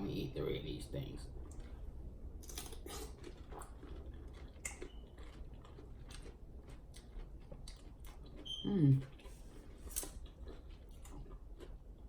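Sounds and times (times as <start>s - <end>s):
close chewing of food: 1.3s - 12.0s
crisp cucumber crunches: 2.4s - 11.7s.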